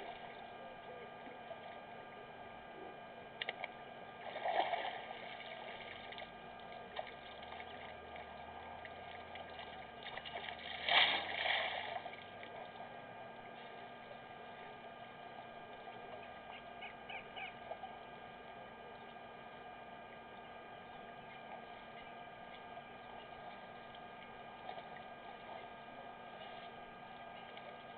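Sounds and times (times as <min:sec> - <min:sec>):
background hiss and hum: 0:00.0 - 0:27.9
water splashing and gushing: 0:09.4 - 0:12.2.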